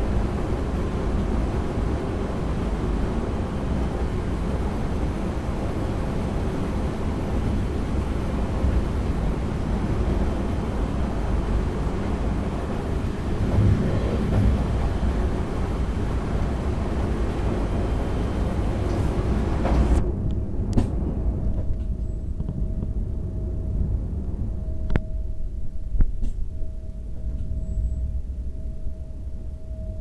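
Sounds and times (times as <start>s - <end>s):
train wheels rumbling on rail: 0.0s - 23.2s
faint steady whine: 12.4s - 20.0s.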